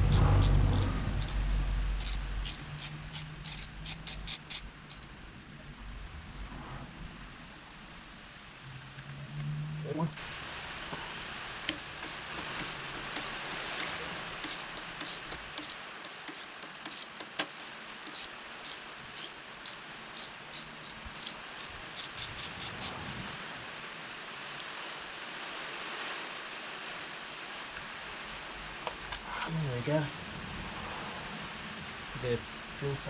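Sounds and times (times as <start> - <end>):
rain hiss: 0.0 - 33.0
hand ratchet clicking: 0.1 - 1.4, 2.0 - 5.1, 11.7 - 23.2.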